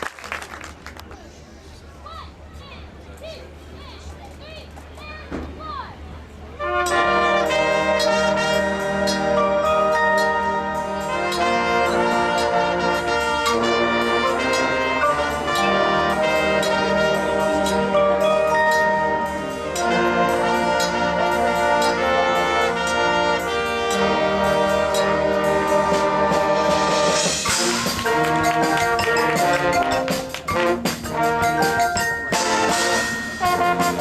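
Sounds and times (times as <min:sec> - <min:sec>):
marching band brass playing: 0:06.5 - 0:34.0
sharp percussion hits: 0:23.9 - 0:34.0.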